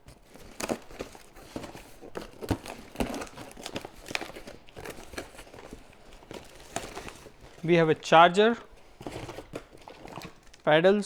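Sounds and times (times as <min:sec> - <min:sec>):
packaging rustling and crinkling: 0:00.0 - 0:10.7.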